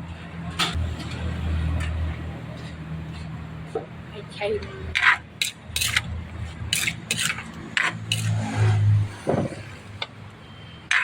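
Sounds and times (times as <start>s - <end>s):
utensils scraping a dish: 4.9s - 6.1s, 6.7s - 9.0s.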